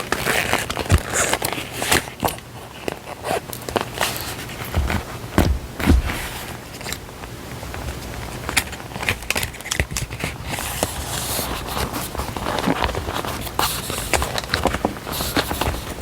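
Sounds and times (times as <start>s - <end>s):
paper crinkling and tapping: 0.0s - 16.0s
paper sliding rustle: 2.8s - 6.9s, 8.9s - 16.0s.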